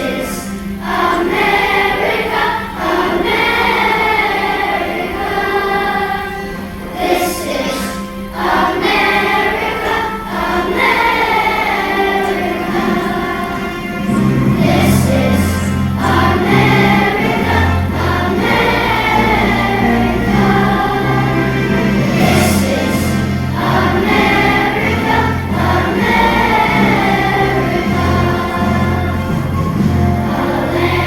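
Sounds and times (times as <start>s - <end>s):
choir singing: 0.0s - 31.0s
instrumental accompaniment: 0.0s - 31.0s
sustained bass notes: 14.1s - 31.0s.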